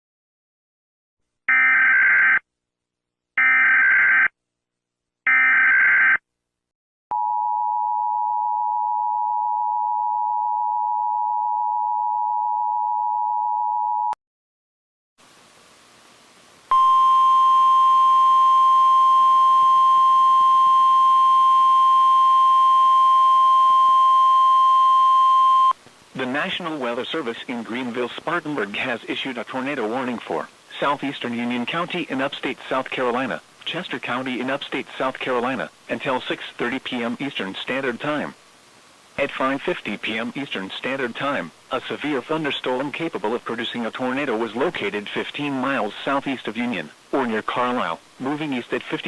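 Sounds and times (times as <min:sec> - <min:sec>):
steady single-pitch alarm tone: 0:07.1 - 0:14.2, 0:16.7 - 0:25.8
faint radio hiss: 0:15.2 - 0:17.1, 0:25.8 - 0:49.0.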